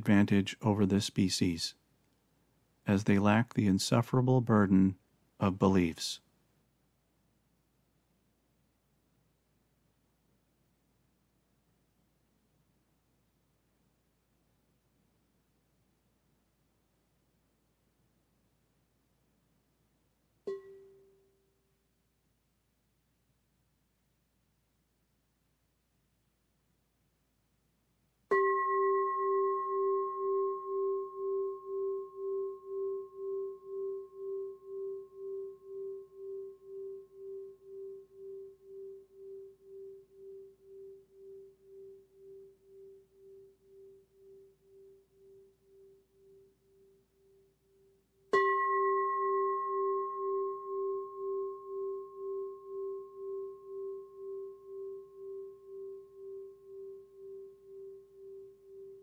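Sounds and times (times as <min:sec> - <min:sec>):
singing bowl ringing: 0:20.5 - 0:21.3, 0:28.3 - 0:59.0.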